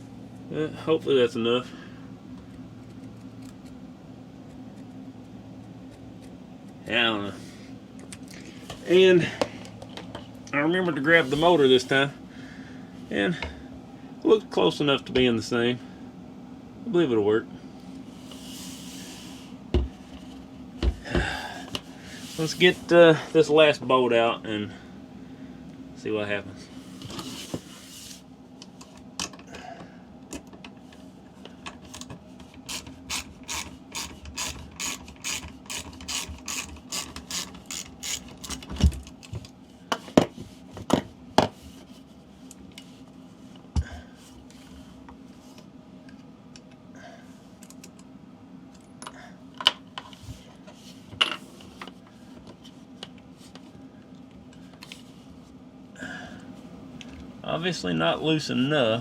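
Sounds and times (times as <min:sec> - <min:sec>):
socket ratchet clicking: 0:32.7 - 0:38.6.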